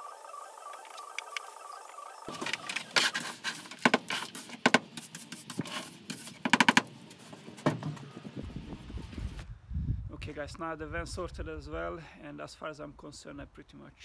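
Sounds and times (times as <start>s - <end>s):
knocks and scrapes of hand work: 2.3s - 9.4s.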